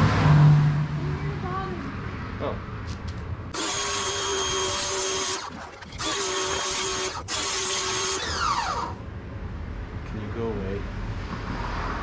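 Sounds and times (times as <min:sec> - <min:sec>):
pressure washer motor whine: 0:03.5 - 0:09.0
pump winding down: 0:03.5 - 0:09.0.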